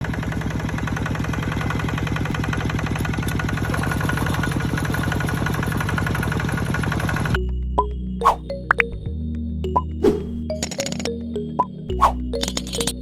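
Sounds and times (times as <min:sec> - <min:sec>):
engine idling with chugging: 0:00.0 - 0:07.4.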